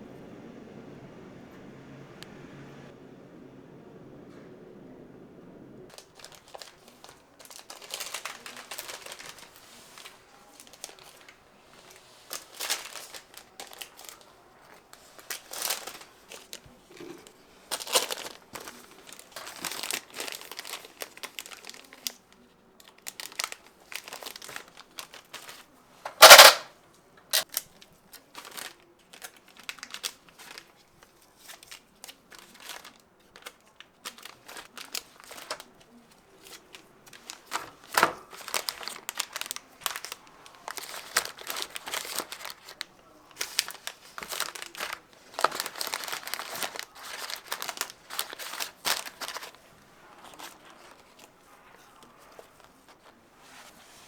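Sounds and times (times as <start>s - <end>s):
wrapping crinkling and rustling: 5.9s - 26.7s, 27.3s - 54.0s
loud sharp crackle: 26.1s - 26.7s.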